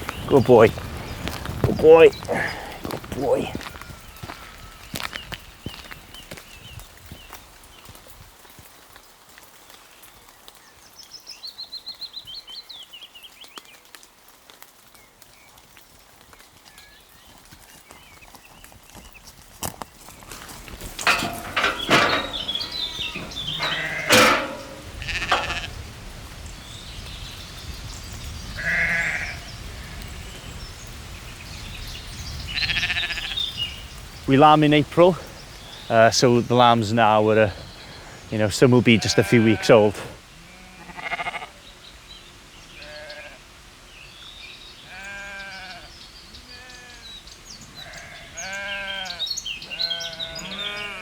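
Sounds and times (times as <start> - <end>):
small birds chirping: 0.0 - 8.2, 14.9 - 39.9, 41.2 - 51.0
sheep bleating: 2.1 - 5.1, 21.1 - 25.8, 28.6 - 30.0, 32.5 - 33.4, 39.0 - 41.6, 42.8 - 43.4, 44.9 - 47.1, 47.8 - 51.0.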